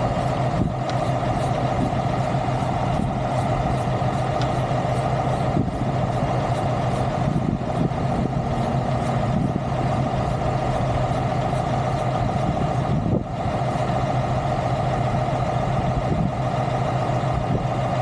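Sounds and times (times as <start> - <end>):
heavy engine idling: 0.0 - 18.0.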